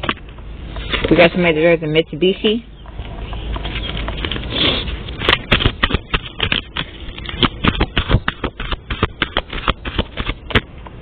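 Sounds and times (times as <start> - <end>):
cards being shuffled: 3.6 - 10.7.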